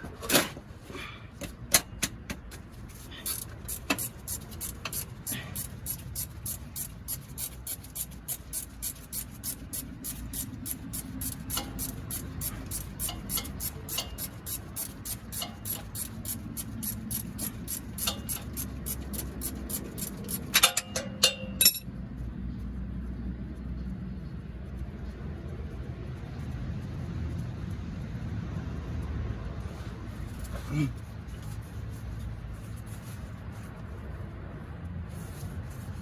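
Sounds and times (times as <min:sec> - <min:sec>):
ringing metal clinks: 0:09.5 - 0:21.9.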